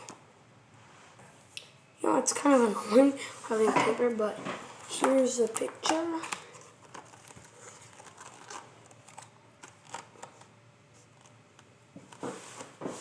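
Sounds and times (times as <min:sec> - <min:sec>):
paper rustling: 0:03.5 - 0:11.4.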